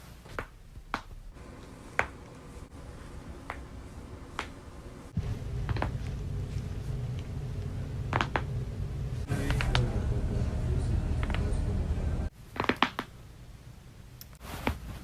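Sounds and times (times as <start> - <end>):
low steady hum: 0.0 - 15.0
neck joints cracking: 12.5 - 13.1.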